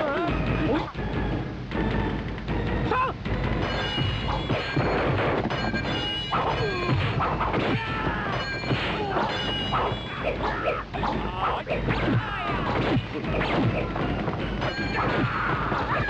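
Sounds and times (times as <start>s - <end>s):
music: 0.0s - 16.0s
punch and kick impacts: 3.6s - 10.4s, 11.8s - 16.0s.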